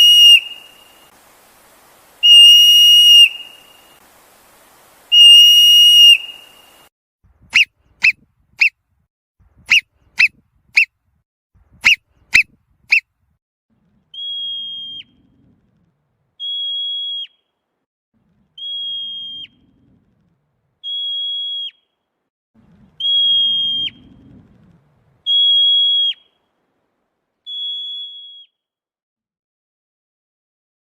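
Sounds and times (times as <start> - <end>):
marmot alarm whistles: 0.0 - 1.1, 2.2 - 4.0, 5.1 - 6.9, 7.5 - 8.8, 9.7 - 10.9, 14.2 - 15.3, 16.4 - 17.5, 18.6 - 19.7, 20.8 - 21.9, 23.0 - 24.1, 25.3 - 26.4, 27.5 - 28.6.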